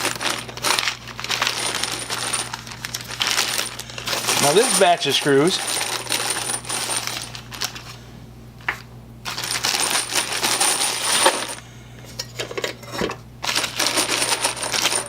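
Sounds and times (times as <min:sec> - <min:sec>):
metal screws clattering: 0:00.0 - 0:07.3, 0:09.3 - 0:11.6, 0:12.3 - 0:15.0.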